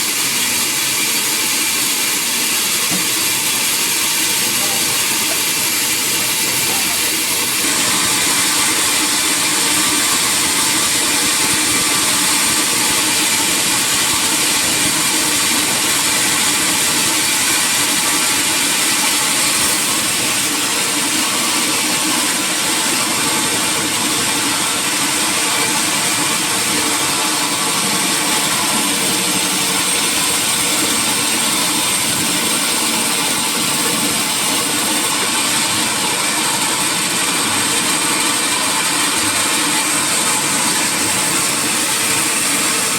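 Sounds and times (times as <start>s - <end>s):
sawmill machinery hissing: 0.0s - 42.9s.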